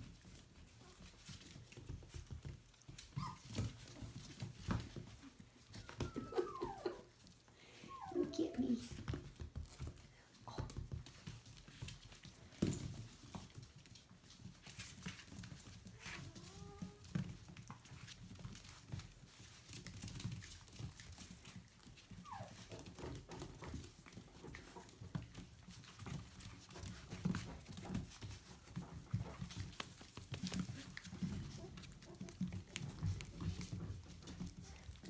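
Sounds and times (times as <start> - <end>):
puppies scuffling: 0.0 - 35.0
puppies whining: 3.0 - 8.7, 15.9 - 17.1, 22.0 - 23.8, 30.2 - 35.0.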